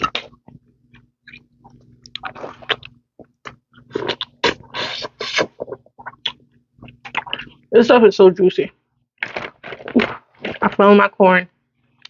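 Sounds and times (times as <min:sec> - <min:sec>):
wet chewing and lip smacking: 0:00.0 - 0:07.6.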